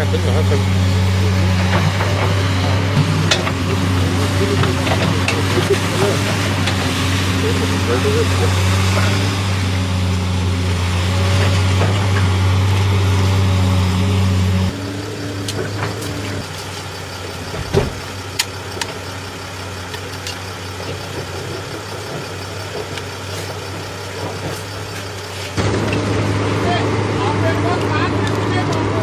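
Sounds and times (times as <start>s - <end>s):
heavy machine engine running: 0.0s - 29.0s
loud thump: 17.6s - 18.0s.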